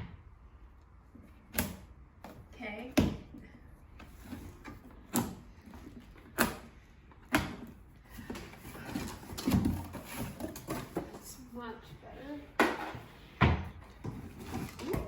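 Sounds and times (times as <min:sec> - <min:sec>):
packaging rustling and scraping: 0:08.0 - 0:11.5, 0:14.0 - 0:15.0.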